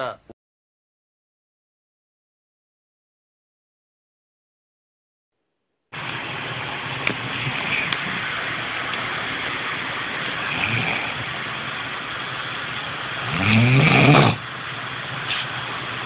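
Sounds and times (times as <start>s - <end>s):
steady hiss: 6.0s - 16.0s
man snoring: 10.4s - 11.2s, 13.2s - 14.4s.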